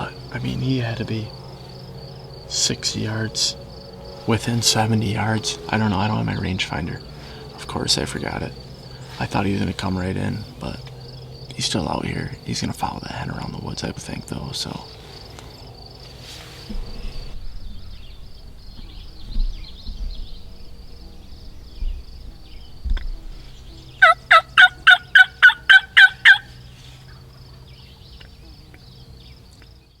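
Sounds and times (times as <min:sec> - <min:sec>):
faint high chirring: 0:00.0 - 0:29.4
turkey gobbling: 0:24.0 - 0:26.7.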